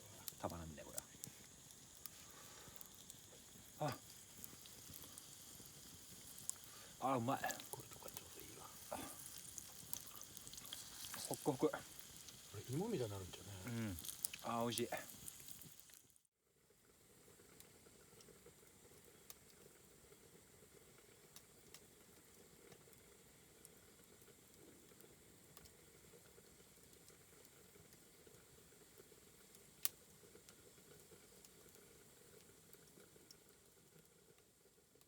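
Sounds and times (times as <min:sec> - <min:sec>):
food sizzling: 0:00.0 - 0:16.2
small crackles: 0:00.0 - 0:35.0.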